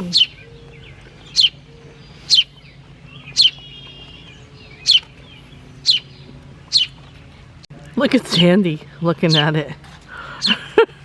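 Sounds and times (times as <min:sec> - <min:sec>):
baby sparrow chirping: 0:00.0 - 0:07.2, 0:08.3 - 0:09.6.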